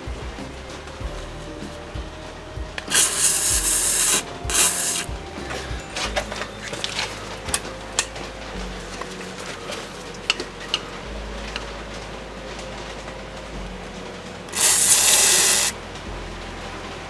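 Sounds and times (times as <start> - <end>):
hissing spray bursts: 2.9 - 5.6, 14.6 - 15.8.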